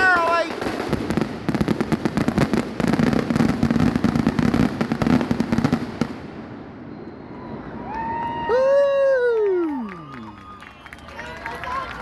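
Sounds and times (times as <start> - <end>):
fireworks bangs and crackles: 0.0 - 7.8.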